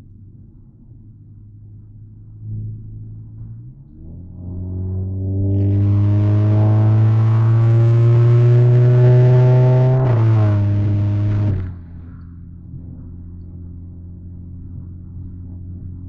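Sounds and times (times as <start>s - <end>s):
car engine accelerating hard: 2.8s - 13.2s.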